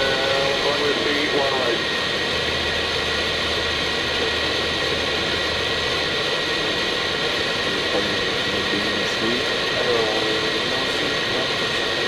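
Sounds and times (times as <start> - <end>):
cockpit airflow rush and hum: 0.0 - 12.0
low drone: 0.0 - 12.0.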